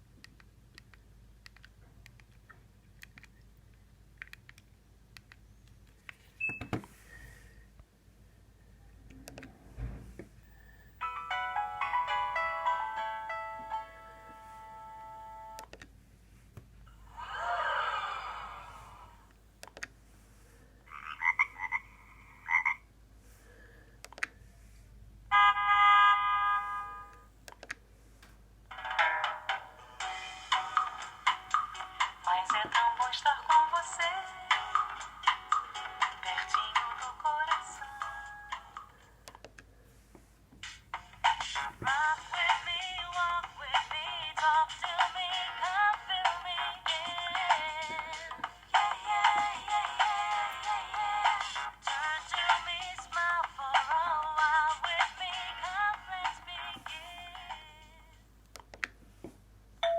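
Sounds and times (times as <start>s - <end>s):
sharp clicks: 0.2s - 6.2s
phone handling thuds: 6.4s - 6.9s
mobile phone ringtones: 11.0s - 15.6s.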